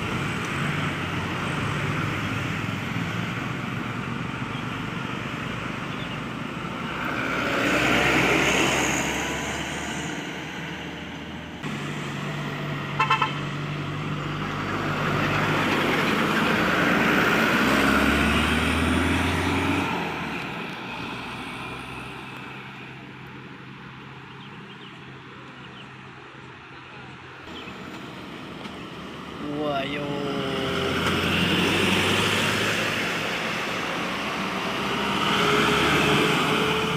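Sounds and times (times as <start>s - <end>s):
heavy vehicles driving past: 0.0s - 36.9s
vehicle horn toots: 12.9s - 13.4s.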